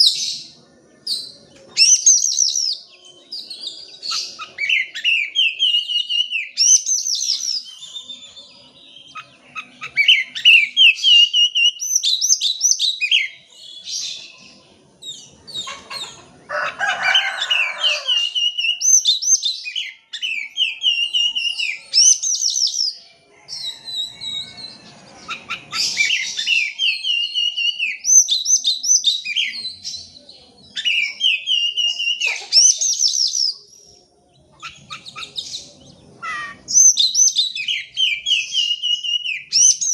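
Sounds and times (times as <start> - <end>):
bird singing whistled song: 0.0 - 15.6, 18.1 - 39.9
harsh rasping bird call: 34.6 - 39.6.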